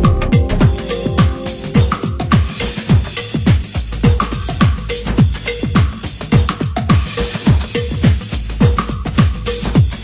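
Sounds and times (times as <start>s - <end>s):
electronic dance music: 0.0s - 3.2s
deep kick drums: 0.0s - 10.0s.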